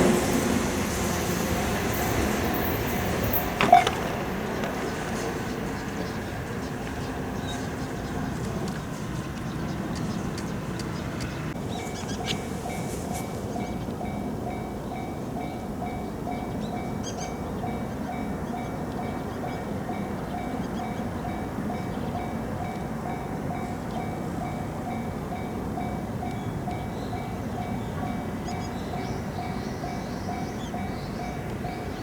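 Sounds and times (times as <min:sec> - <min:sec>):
level-crossing alarm ringing: 0:00.0 - 0:09.9
train rumble: 0:00.0 - 0:32.0.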